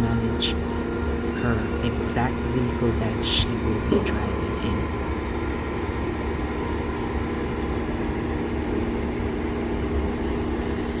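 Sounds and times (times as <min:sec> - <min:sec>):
car engine hum: 0:00.0 - 0:11.0.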